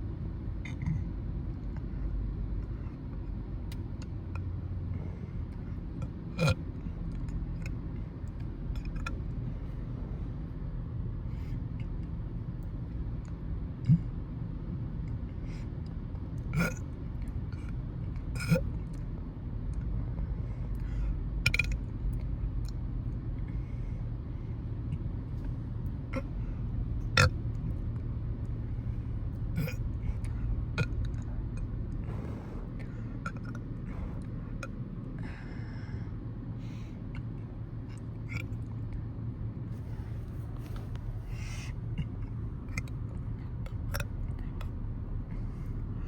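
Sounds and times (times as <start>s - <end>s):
steady low hum: 0.0s - 46.0s
woman burping: 29.6s - 29.8s.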